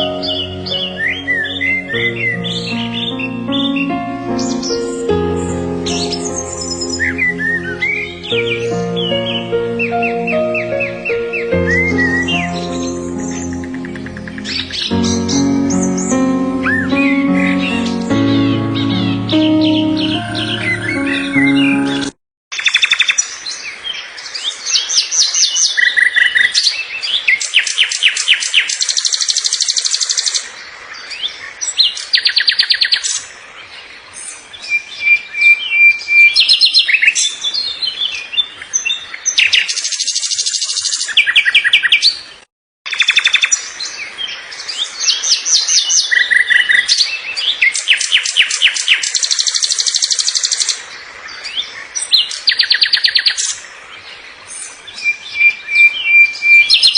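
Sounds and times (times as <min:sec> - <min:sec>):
songbirds chirping and trilling: 0:00.0 - 0:22.1.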